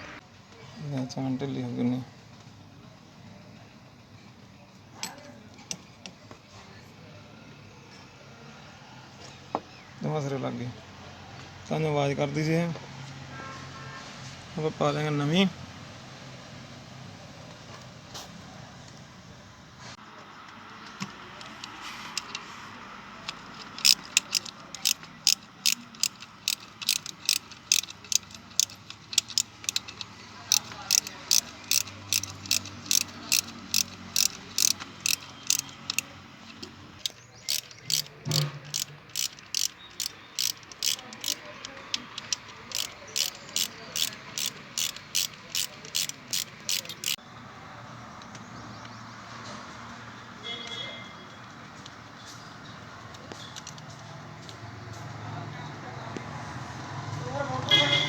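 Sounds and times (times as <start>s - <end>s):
ratchet wrench clicking: 23.2s - 47.2s.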